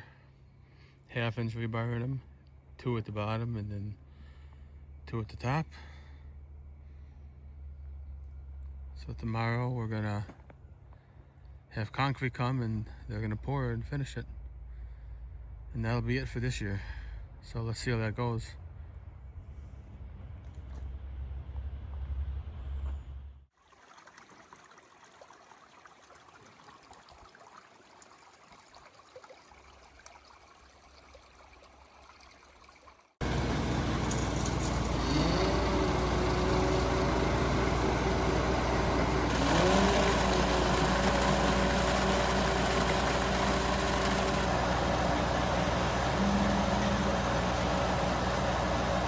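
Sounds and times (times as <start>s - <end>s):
heavy truck engine revving: 33.2s - 49.0s.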